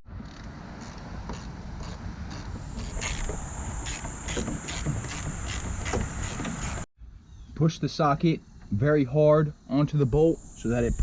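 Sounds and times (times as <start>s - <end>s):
ratchet clicking: 0.8s - 6.8s.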